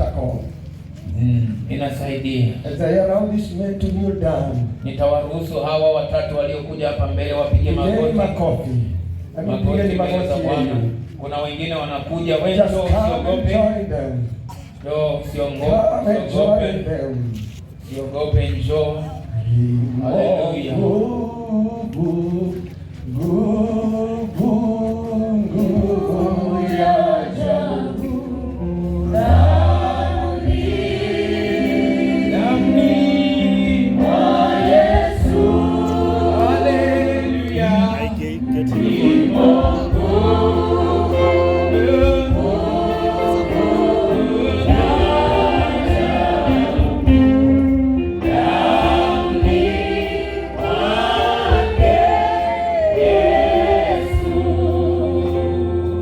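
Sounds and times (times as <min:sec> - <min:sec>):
low steady accompaniment: 0:00.0 - 0:56.0
congregation singing gospel: 0:19.4 - 0:56.0.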